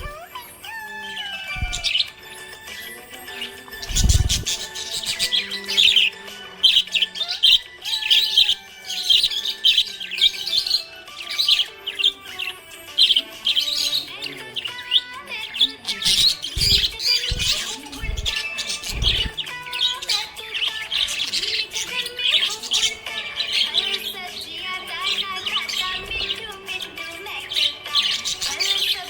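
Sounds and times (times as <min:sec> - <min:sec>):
budgerigar chirping: 0:00.0 - 0:29.0.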